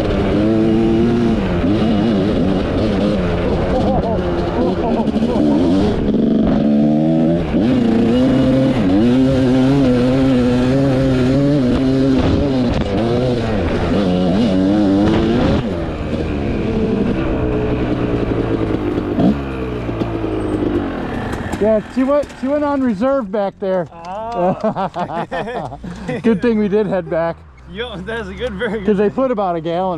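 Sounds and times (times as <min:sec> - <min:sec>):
dirt bike engine revving: 0:00.0 - 0:23.3.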